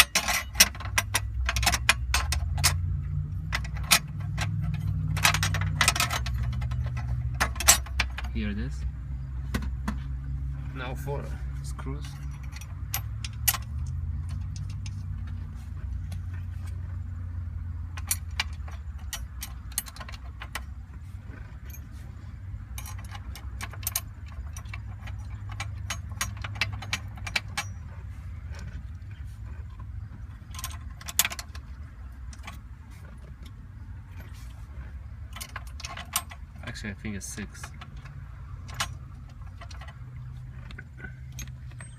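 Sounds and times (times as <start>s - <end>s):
hand tools clicking on metal: 0.0s - 8.4s, 17.8s - 22.0s, 22.7s - 41.9s.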